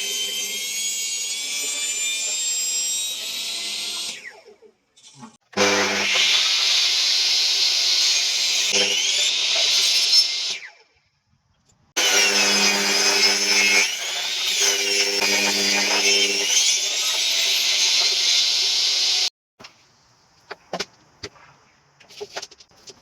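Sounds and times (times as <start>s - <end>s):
electric power tool on wood: 0.0s - 4.5s, 5.5s - 10.7s, 12.0s - 19.3s.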